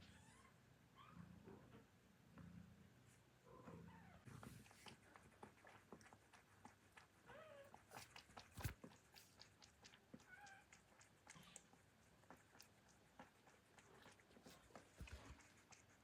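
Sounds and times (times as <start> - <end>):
cat meowing softly: 0.0 - 1.8, 10.2 - 10.8.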